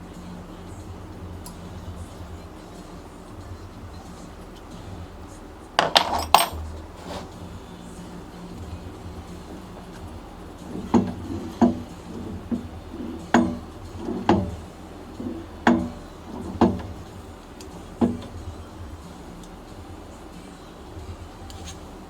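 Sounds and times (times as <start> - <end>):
metal parts being struck: 5.8 - 7.3, 10.6 - 17.1.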